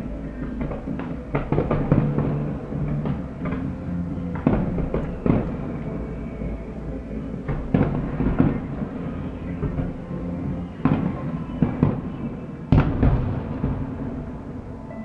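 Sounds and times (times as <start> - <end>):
low musical tones: 0.0 - 15.0
fireworks exploding: 0.5 - 6.0, 7.4 - 15.0.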